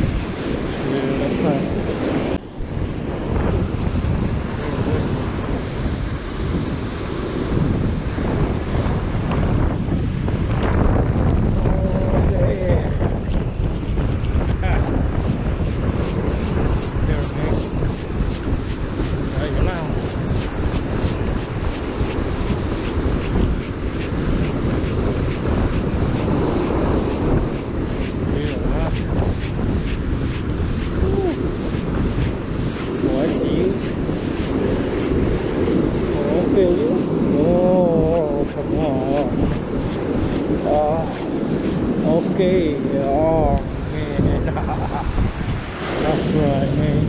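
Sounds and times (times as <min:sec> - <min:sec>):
ocean surf breaking: 0:00.0 - 0:11.6, 0:12.2 - 0:47.0
wind buffeting microphone: 0:00.0 - 0:47.0.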